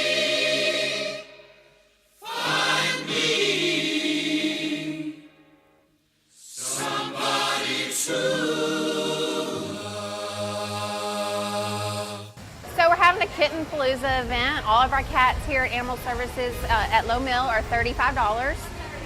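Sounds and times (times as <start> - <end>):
choir singing long notes: 0.0 - 12.4.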